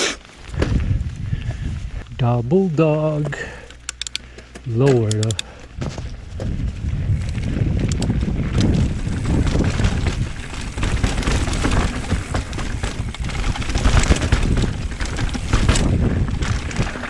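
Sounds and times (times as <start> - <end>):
bike tyre noise: 0.0 - 17.0
bike clattering and rattling: 0.2 - 1.7, 3.1 - 17.0
wind on microphone: 0.5 - 2.2, 5.7 - 17.0.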